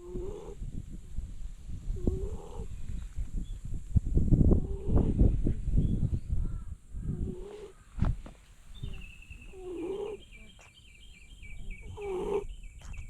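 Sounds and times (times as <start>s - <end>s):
bird chirping: 5.8s - 13.0s
brief thump: 8.0s - 8.5s.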